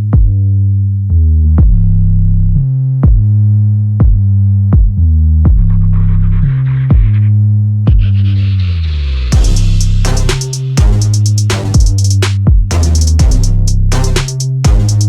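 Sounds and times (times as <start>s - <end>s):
synth bass line: 0.0s - 15.0s
drum machine beat: 3.0s - 3.3s, 4.0s - 5.8s, 6.9s - 7.2s, 7.9s - 8.1s, 9.4s - 15.0s.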